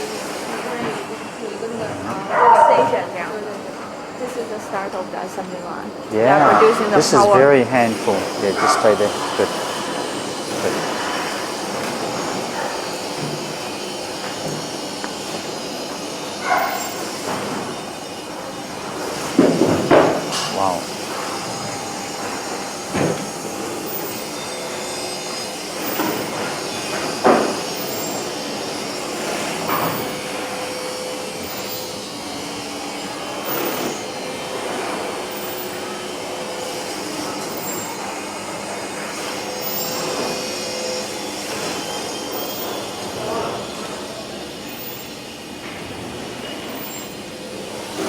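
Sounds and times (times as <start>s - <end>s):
machine hum: 0.0s - 48.0s.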